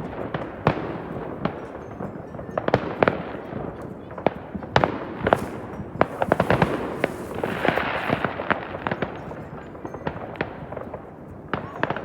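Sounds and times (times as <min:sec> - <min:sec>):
fireworks and firecrackers banging: 0:04.8 - 0:09.4
firework hissing rush: 0:05.3 - 0:08.3.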